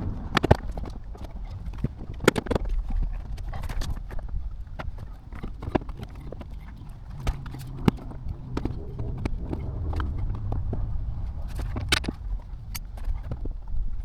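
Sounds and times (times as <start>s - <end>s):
car engine idling: 5.2s - 13.6s.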